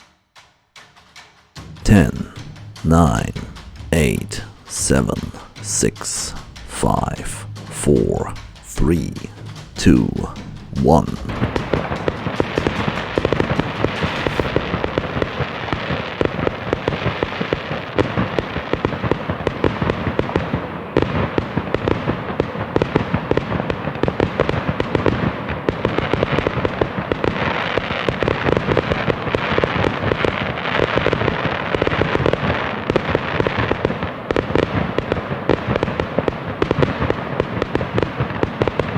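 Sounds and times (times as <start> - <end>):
fireworks banging and crackling: 1.9 - 38.9.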